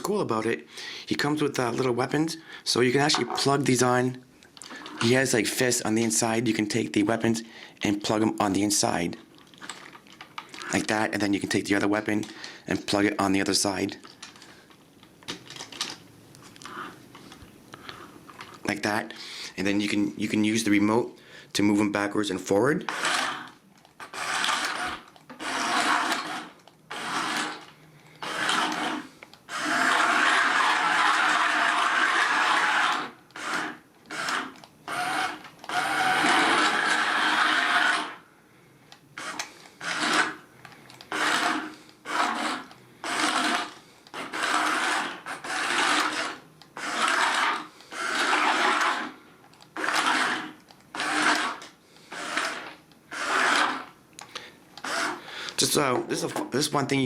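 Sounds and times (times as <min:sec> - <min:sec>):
toy motors whirring: 0:22.9 - 0:38.2, 0:39.2 - 0:55.2.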